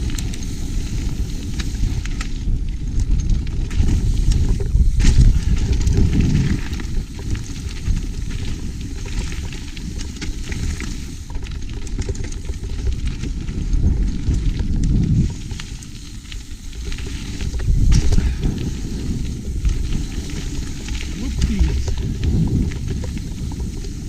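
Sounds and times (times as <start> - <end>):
wind buffeting microphone: 0.0 - 8.9, 12.9 - 15.6, 16.5 - 24.0
bike rattling and clicking: 0.0 - 24.0
tyres crackling on wet trail: 0.0 - 24.0.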